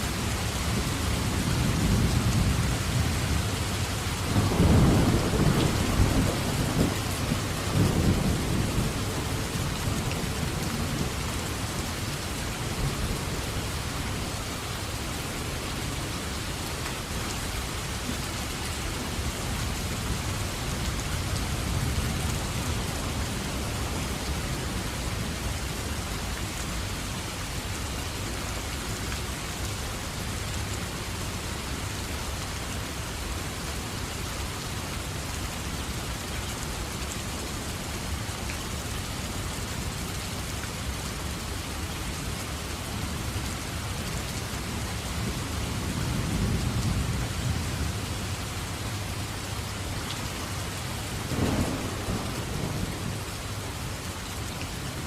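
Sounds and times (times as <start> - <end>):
heavy rain: 0.0 - 55.0
thunder rumbling: 1.2 - 10.0, 51.2 - 53.4.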